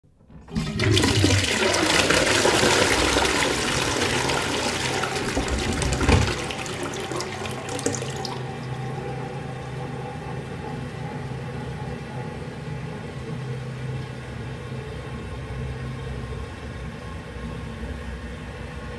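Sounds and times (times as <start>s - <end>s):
toilet flushing: 0.1s - 14.5s
toilet bowl draining gulp: 0.2s - 10.4s
water running: 0.2s - 12.0s.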